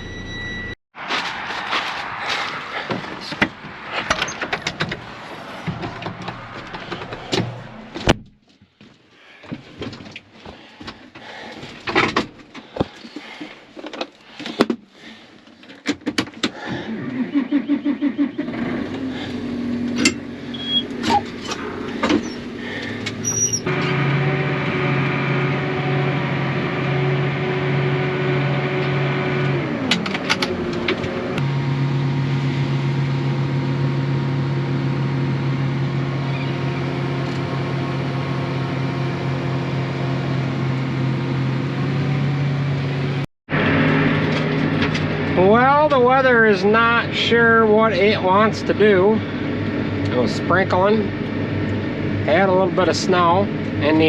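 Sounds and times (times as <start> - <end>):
truck engine starting and running: 0.0 - 8.6, 9.2 - 54.0
door clunks: 3.2 - 8.4.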